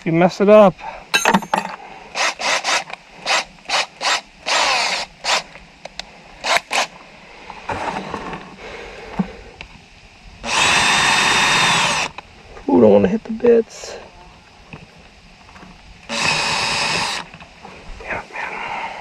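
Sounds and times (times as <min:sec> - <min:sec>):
power drill boring into pipe: 0:02.2 - 0:05.5, 0:10.4 - 0:12.1, 0:16.1 - 0:17.3.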